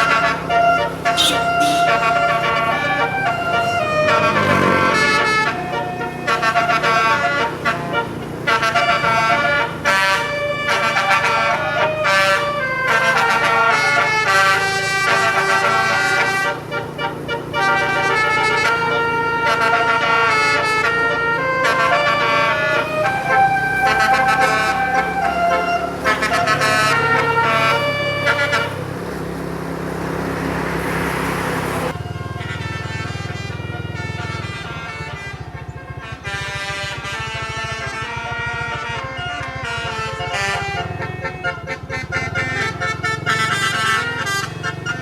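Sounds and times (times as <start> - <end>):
multi-tone bus horn playing tune: 0.0 - 45.0.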